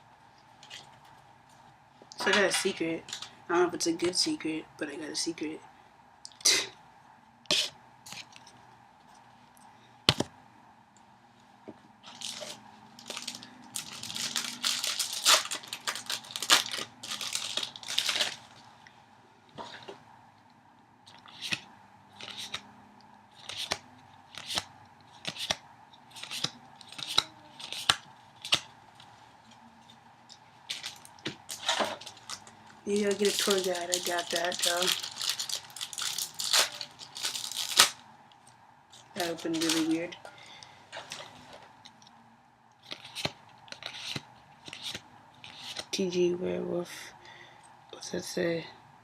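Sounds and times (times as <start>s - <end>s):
foil pack tearing and crinkling: 12.1s - 18.6s, 30.7s - 38.0s, 39.2s - 40.0s.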